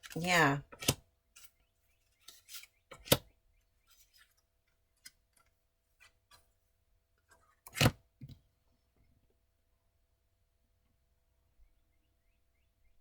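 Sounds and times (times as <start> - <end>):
cards clicking and rustling: 0.0 - 3.3.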